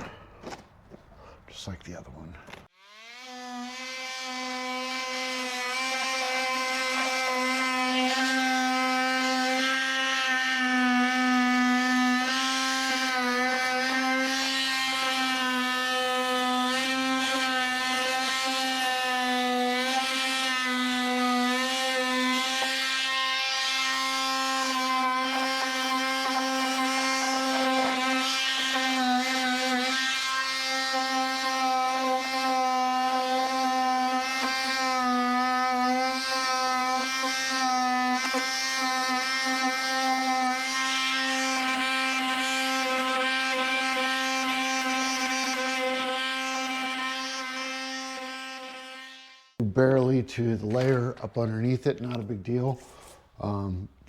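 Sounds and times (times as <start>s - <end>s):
power tool buzzing whine: 2.5s - 49.6s.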